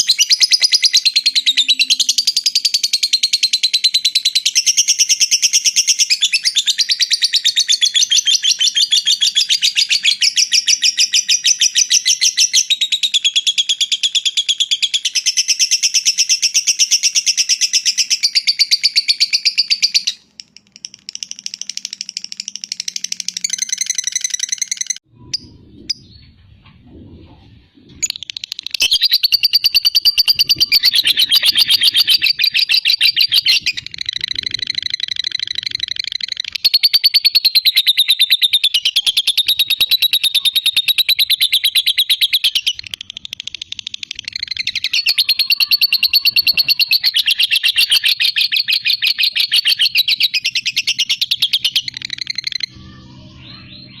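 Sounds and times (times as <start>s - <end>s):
lovebird chattering: 27.9s - 54.0s.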